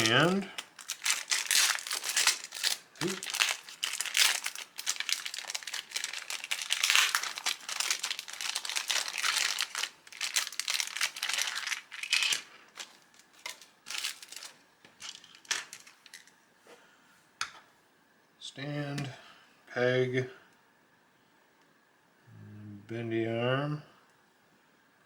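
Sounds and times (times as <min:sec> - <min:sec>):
plastic packaging crinkling: 0:00.0 - 0:16.3.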